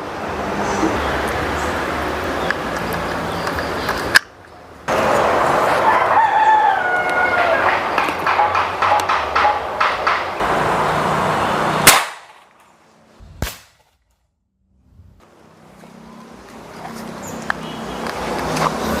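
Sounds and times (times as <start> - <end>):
steady background noise: 0.0 - 19.0
air rifle shot crack: 11.8 - 12.5, 13.3 - 13.8.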